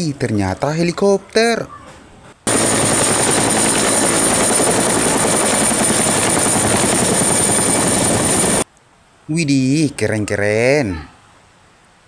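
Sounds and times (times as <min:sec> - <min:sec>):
helicopter rotor and engine: 0:02.5 - 0:08.6.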